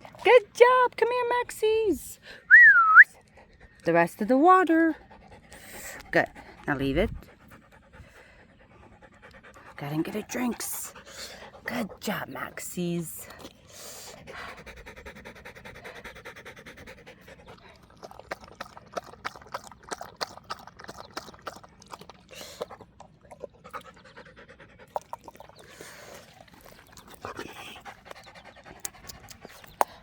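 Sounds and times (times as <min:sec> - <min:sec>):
dog lapping water: 0:00.0 - 0:00.9, 0:13.2 - 0:30.0
dog panting: 0:03.0 - 0:30.0.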